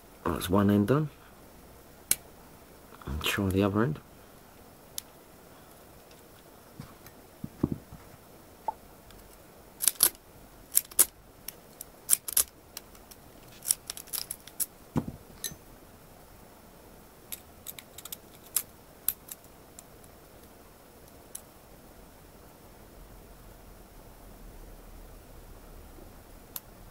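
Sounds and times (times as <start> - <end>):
dull knock: 15.0 - 15.2.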